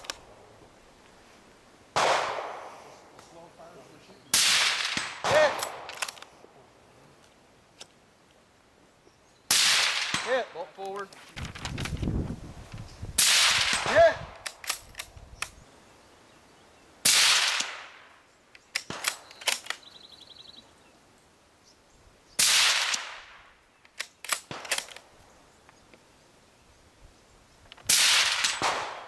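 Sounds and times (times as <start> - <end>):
rifle shots echoing: 2.0 - 2.8, 4.3 - 6.3, 9.5 - 10.5, 13.2 - 14.7, 17.0 - 18.2, 18.8 - 19.8, 22.4 - 23.5, 27.9 - 29.0
rifle bolt clicks: 5.6 - 6.3, 14.4 - 15.6, 18.5 - 19.8, 23.8 - 25.0.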